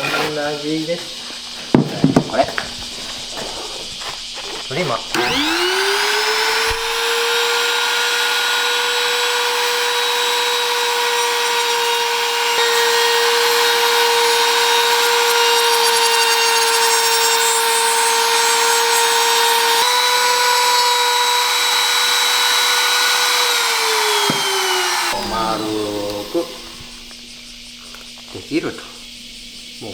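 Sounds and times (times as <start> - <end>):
electric woodworking tool running: 5.1 - 27.1.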